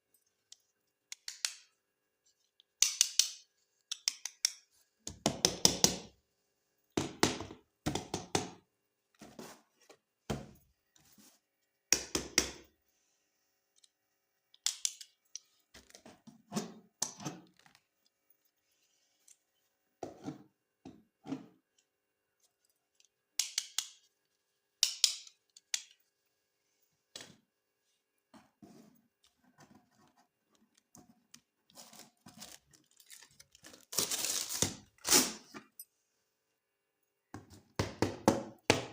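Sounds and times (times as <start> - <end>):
toy parts clicking and knocking: 0.4 - 1.7, 2.6 - 6.0, 14.5 - 15.5, 22.9 - 24.1, 24.8 - 26.0
plastic packaging rustling: 31.8 - 35.5.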